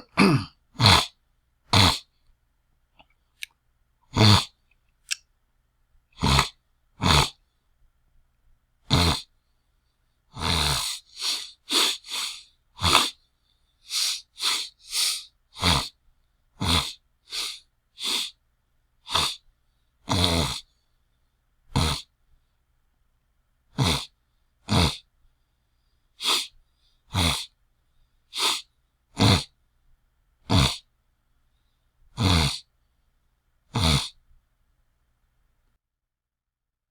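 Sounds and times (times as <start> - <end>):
person hacking throat: 0.0 - 2.1, 4.1 - 4.6, 6.2 - 7.4, 8.9 - 9.3, 10.4 - 13.2, 13.9 - 16.0, 16.6 - 18.3, 20.1 - 20.6, 21.8 - 22.1, 23.8 - 24.1, 24.7 - 25.0, 27.1 - 27.5, 29.2 - 29.5, 30.5 - 30.8, 32.2 - 32.6, 33.8 - 34.2.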